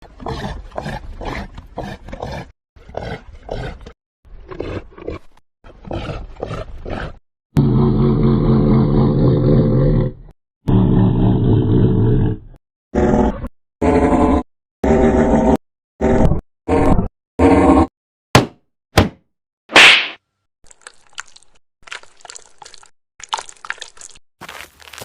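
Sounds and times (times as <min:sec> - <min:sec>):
long deep roars: 0:07.6 - 0:16.3.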